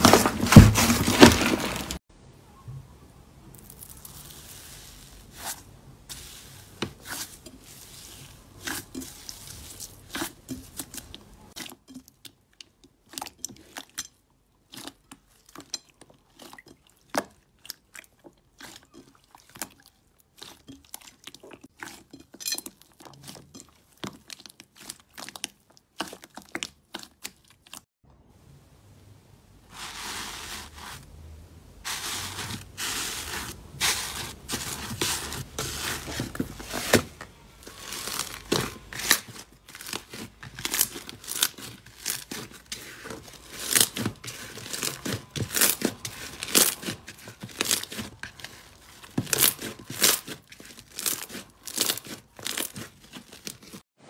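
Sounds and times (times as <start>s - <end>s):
slime crackling and popping: 37.6s - 53.8s.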